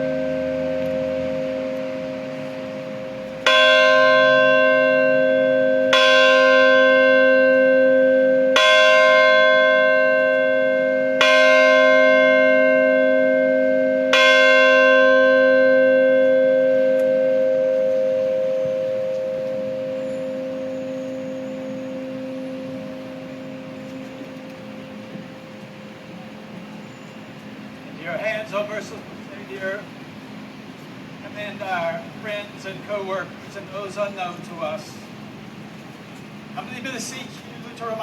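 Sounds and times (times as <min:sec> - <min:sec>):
church bell tolling: 0:00.0 - 0:30.3.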